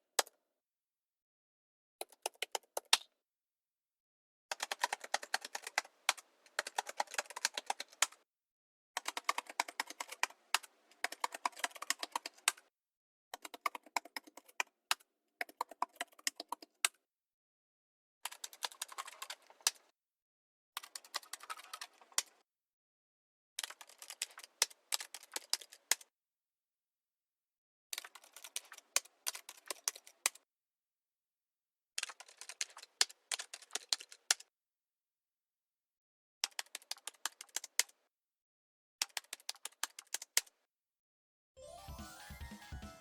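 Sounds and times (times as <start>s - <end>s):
typing on keyboard: 2.0s - 3.0s, 4.5s - 8.2s, 9.0s - 12.6s, 13.4s - 16.8s, 18.2s - 19.6s, 20.8s - 22.2s, 23.6s - 26.0s, 28.0s - 30.2s, 32.0s - 34.4s, 36.4s - 38.0s, 39.0s - 40.5s.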